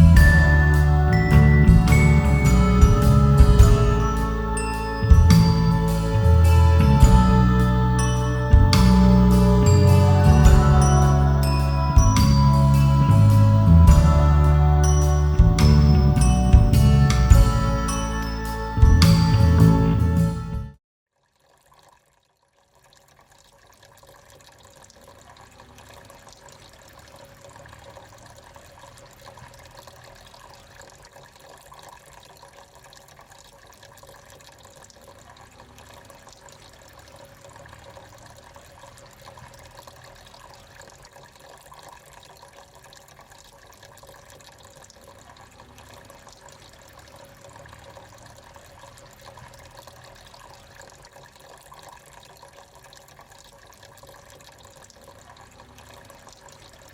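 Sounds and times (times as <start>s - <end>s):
fountain water trickling and splashing: 0.0s - 56.9s.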